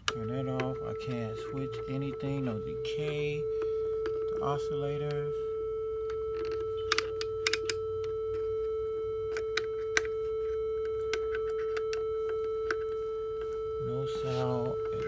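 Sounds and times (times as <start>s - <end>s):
switches clicking: 0.0s - 4.4s, 6.0s - 8.5s, 9.3s - 10.2s
synthesizer steady tone: 0.0s - 15.0s.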